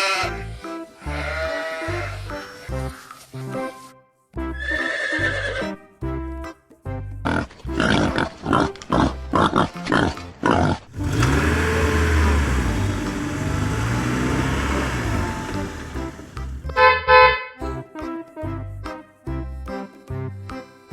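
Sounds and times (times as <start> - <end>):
music: 0.0 - 20.9
loud animal grunts: 7.2 - 11.5
steady rumbling noise: 10.9 - 16.8.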